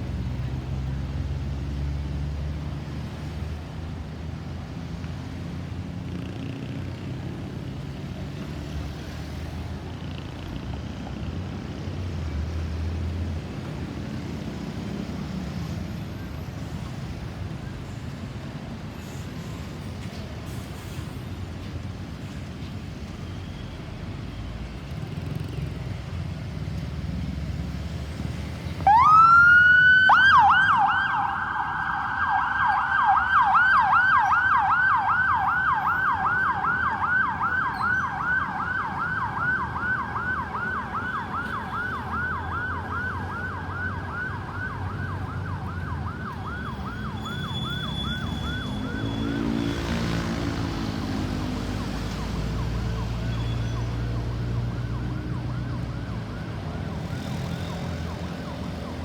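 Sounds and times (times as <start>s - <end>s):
road traffic noise: 0.0s - 59.0s
ambulance siren wailing and yelping: 28.8s - 59.0s.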